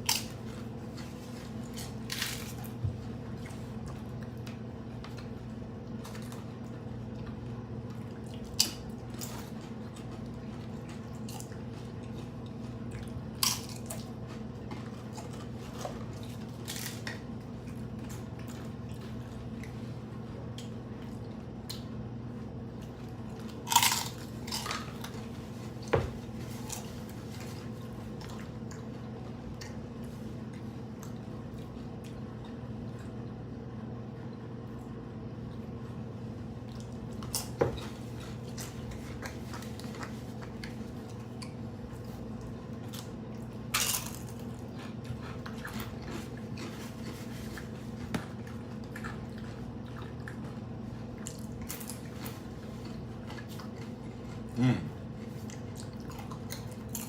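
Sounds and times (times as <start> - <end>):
crunching food: 0.0 - 35.8, 36.5 - 57.0
steady low hum: 0.0 - 57.0.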